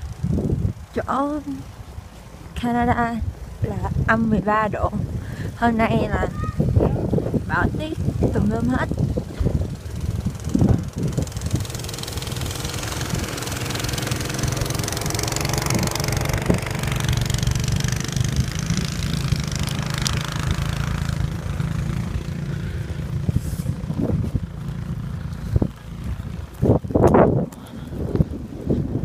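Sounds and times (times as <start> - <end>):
engine humming: 0.0 - 29.0.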